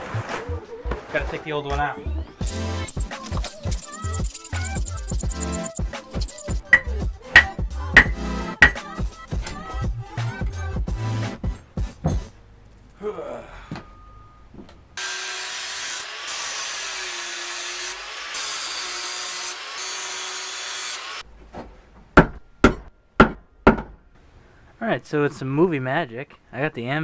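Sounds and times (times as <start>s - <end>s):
power tool cutting wood: 15.0s - 21.2s.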